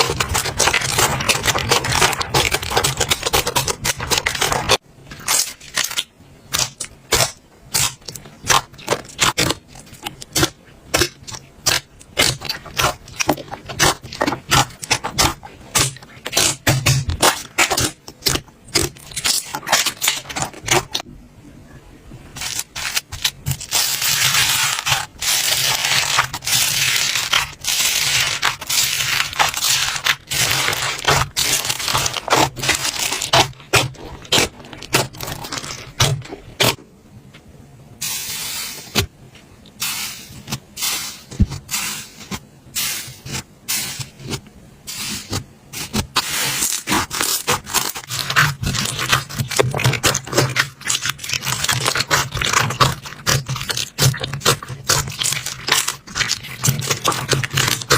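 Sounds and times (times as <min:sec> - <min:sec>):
slime crackling and scraping: 0:00.0 - 0:21.1, 0:22.3 - 0:36.8, 0:39.8 - 0:57.9.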